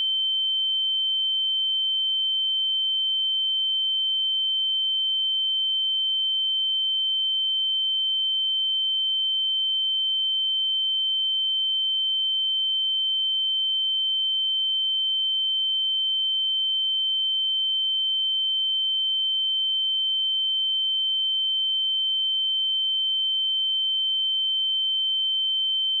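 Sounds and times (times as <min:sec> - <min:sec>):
high-pitched sine-wave test tone: 0:00.0 - 0:26.0.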